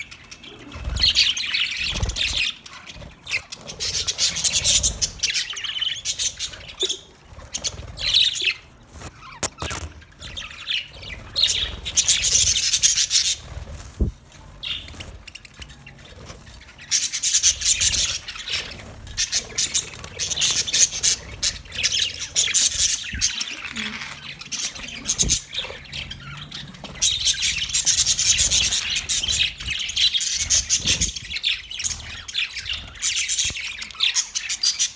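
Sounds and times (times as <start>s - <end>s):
parrots squawking: 0.0s - 34.9s.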